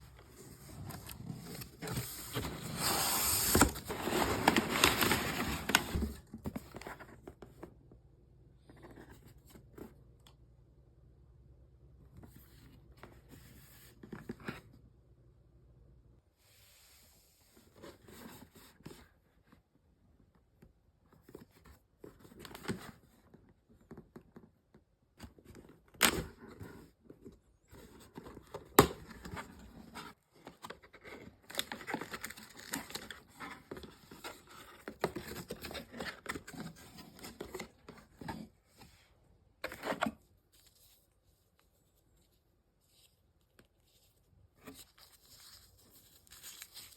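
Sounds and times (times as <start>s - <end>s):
paper and cardboard rustling: 0.0s - 7.7s, 25.2s - 46.9s.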